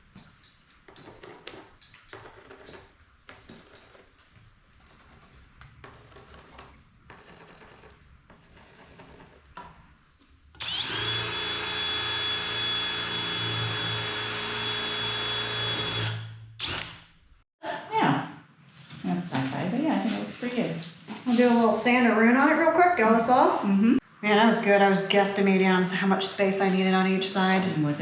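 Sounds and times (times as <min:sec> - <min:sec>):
power tool motor whining: 0:10.6 - 0:17.0.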